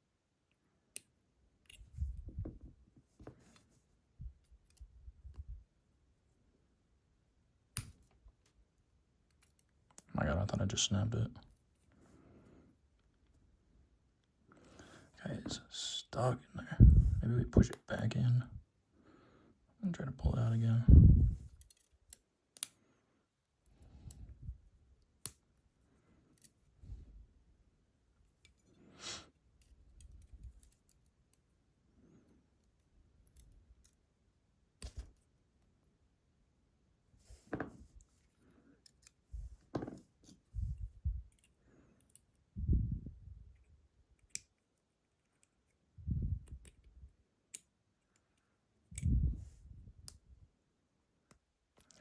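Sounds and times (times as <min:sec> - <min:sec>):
tool clicking and scraping in lock: 0:01.0 - 0:02.0, 0:21.5 - 0:22.8, 0:38.0 - 0:40.5.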